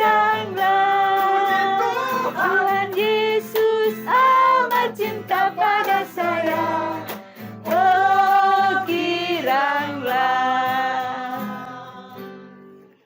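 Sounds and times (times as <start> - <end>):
voices singing a children's song: 0.0 - 12.4.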